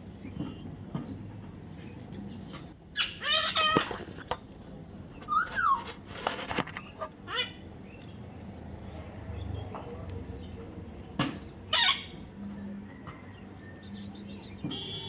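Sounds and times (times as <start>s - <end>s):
parrot squawking: 2.9s - 4.0s, 7.2s - 7.6s, 11.7s - 12.2s.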